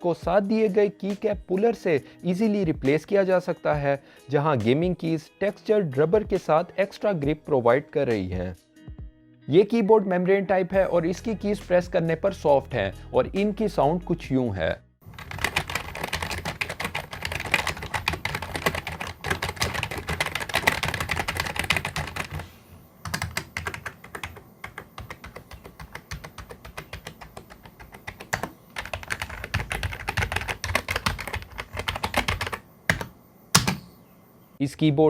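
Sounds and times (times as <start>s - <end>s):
typing on a keyboard: 15.1s - 22.4s, 23.0s - 33.9s.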